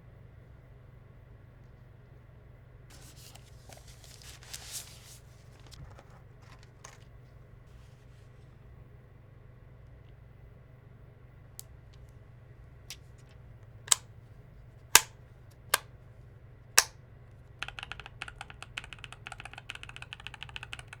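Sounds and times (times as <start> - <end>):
mechanical keyboard typing: 15.0 - 15.8, 17.6 - 21.0.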